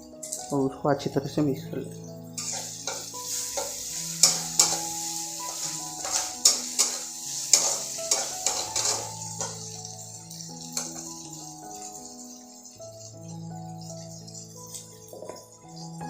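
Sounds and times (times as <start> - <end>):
soft background music: 0.0 - 16.0
onion sizzling in hot oil: 2.0 - 16.0
spatula scraping a pan: 2.4 - 9.8.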